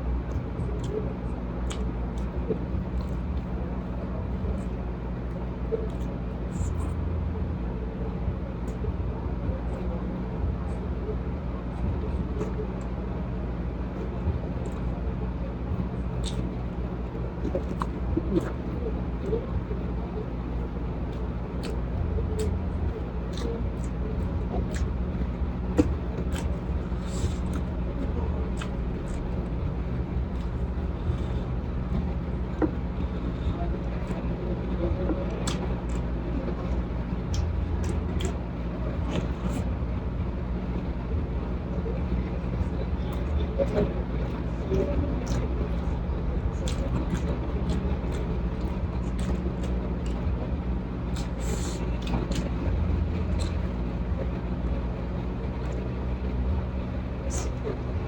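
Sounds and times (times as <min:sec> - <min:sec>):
low background rumble: 0:00.0 - 0:58.0
steady low hum: 0:00.0 - 0:58.0
person chewing: 0:01.6 - 0:03.5, 0:16.2 - 0:16.7, 0:17.4 - 0:19.4, 0:20.6 - 0:34.2, 0:35.4 - 0:36.0, 0:39.0 - 0:39.6, 0:46.6 - 0:50.2, 0:51.1 - 0:53.8.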